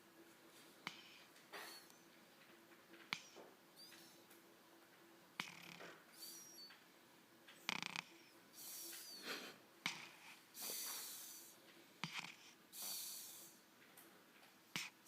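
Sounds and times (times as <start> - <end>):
snort: 5.4 - 6.5, 7.7 - 13.6, 14.8 - 15.0
snoring breaths with whistle: 5.4 - 6.7, 7.7 - 13.6.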